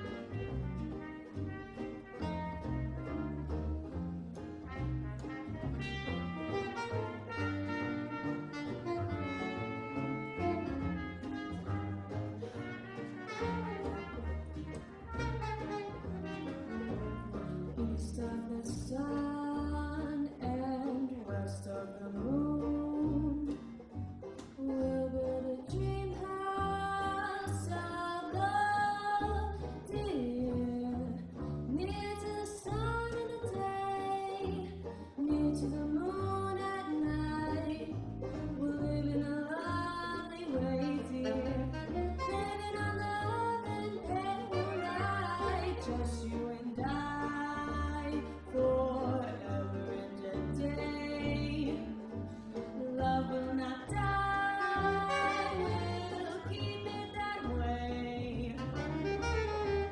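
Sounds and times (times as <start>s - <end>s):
guitar chords: 0.0s - 20.8s, 36.3s - 59.9s
plucked double bass: 0.0s - 59.9s.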